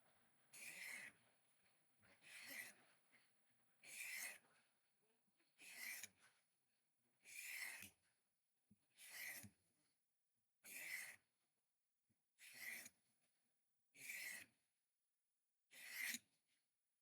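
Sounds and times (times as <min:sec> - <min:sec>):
knife blade scraping sharpener: 0:15.8 - 0:16.2.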